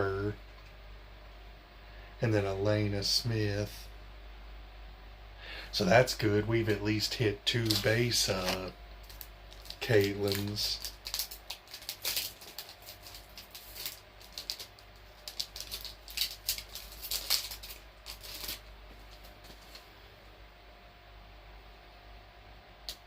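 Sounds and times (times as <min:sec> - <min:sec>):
cards rustling and clicking: 0:07.5 - 0:19.9.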